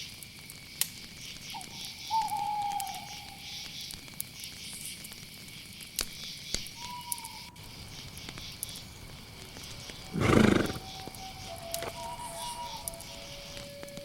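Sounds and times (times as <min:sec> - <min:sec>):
campfire crackling: 0:00.0 - 0:14.0
crickets chirping: 0:00.0 - 0:14.0
owl-like hoot: 0:01.6 - 0:03.5, 0:10.1 - 0:13.6
loud short animal call: 0:10.1 - 0:10.9.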